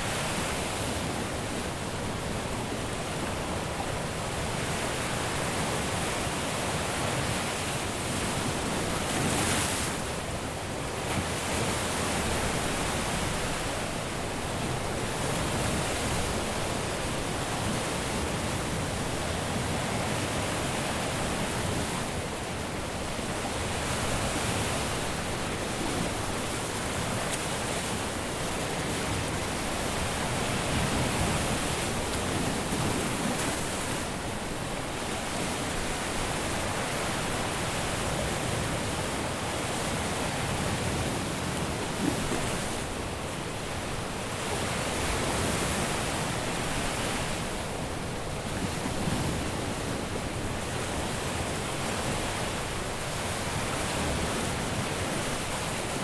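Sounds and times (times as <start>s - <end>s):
waves breaking on beach: 0.0s - 56.0s.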